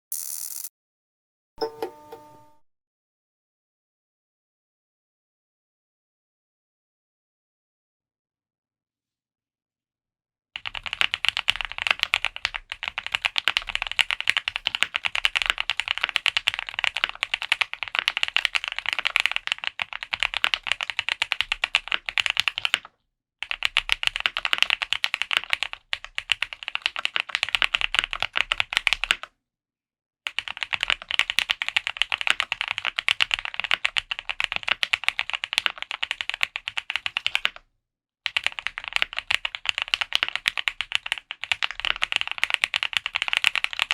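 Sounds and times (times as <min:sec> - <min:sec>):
mechanical keyboard typing: 0:01.6 - 0:02.6, 0:10.6 - 0:29.2, 0:30.3 - 0:37.6, 0:38.3 - 0:43.9.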